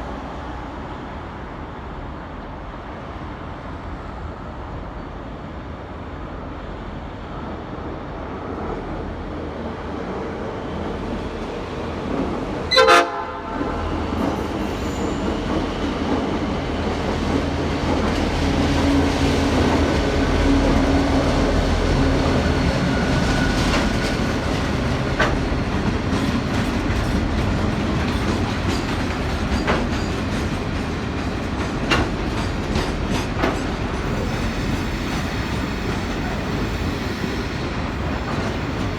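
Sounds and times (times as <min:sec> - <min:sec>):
diesel locomotive engine drone: 0:00.0 - 0:38.9
air horn blast: 0:12.7 - 0:13.9.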